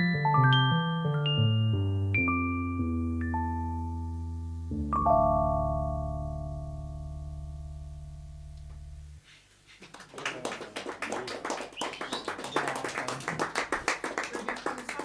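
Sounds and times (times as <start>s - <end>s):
sustained keyboard chord: 0.0s - 9.2s
audience applauding: 9.8s - 15.0s.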